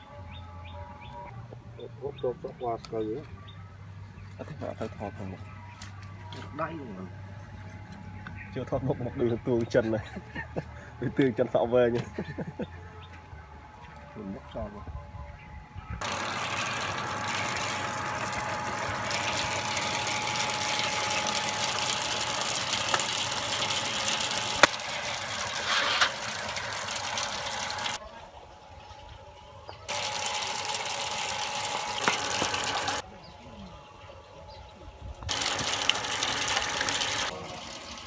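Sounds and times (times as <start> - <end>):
running water rushing: 16.0 - 28.0, 29.9 - 33.0, 35.3 - 38.0.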